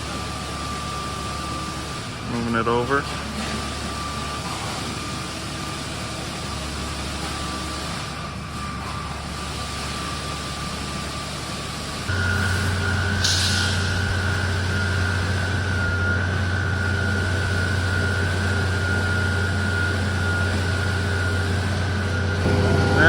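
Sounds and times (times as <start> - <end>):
diesel truck engine droning: 10.9 - 23.0
high whine: 12.1 - 23.0
brief hiss: 13.2 - 13.8.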